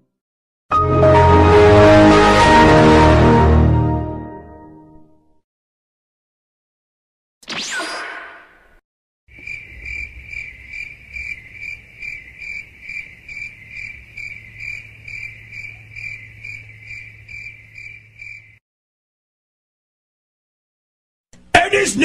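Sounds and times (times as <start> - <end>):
crickets chirping: 9.3 - 18.6.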